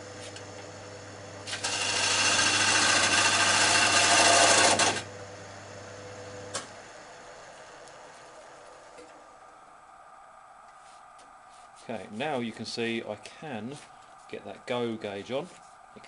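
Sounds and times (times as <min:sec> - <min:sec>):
wood lathe humming: 0:00.3 - 0:05.2
tool cutting spinning wood: 0:01.5 - 0:05.1.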